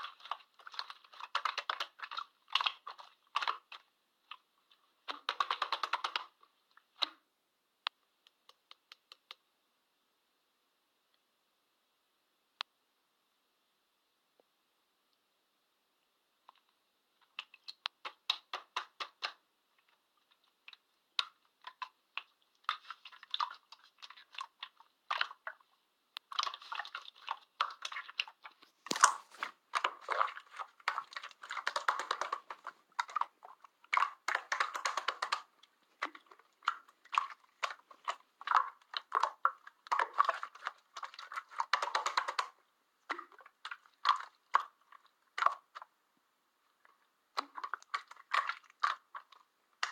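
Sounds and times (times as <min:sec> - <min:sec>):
slime crackling pops and clicks: 0:28.9 - 0:30.0.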